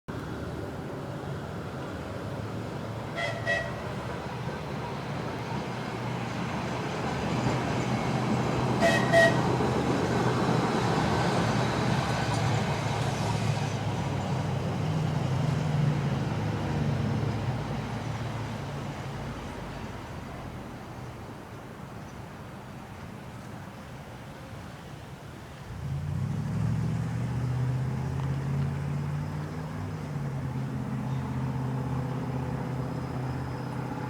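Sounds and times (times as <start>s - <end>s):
low engine rumble: 0.1s - 34.0s
vehicle horn toots: 3.2s - 3.9s, 8.8s - 9.5s.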